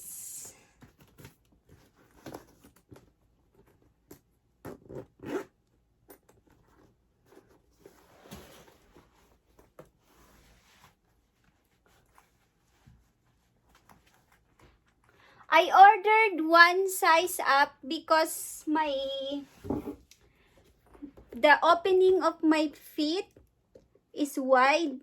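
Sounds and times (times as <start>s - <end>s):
boot zipper pulled: 4.7s - 5.6s.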